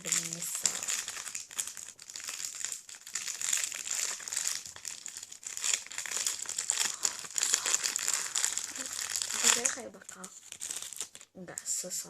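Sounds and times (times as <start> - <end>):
plastic packaging crinkling: 0.0 - 12.0.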